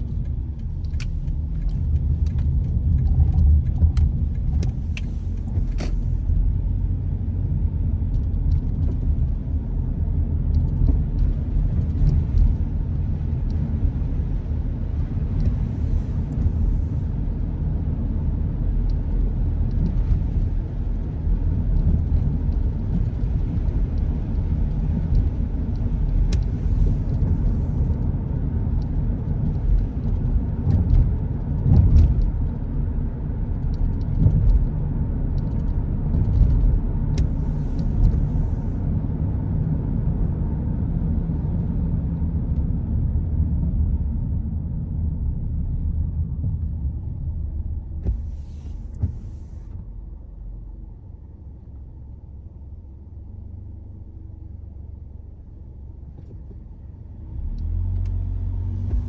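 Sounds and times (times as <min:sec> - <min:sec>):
faint light ticks: 0:00.0 - 0:06.1, 0:10.5 - 0:14.2, 0:14.9 - 0:17.0, 0:21.8 - 0:32.8, 0:33.5 - 0:34.7, 0:35.3 - 0:38.6, 0:57.4 - 0:58.2
car road and engine rumble: 0:00.0 - 0:59.0.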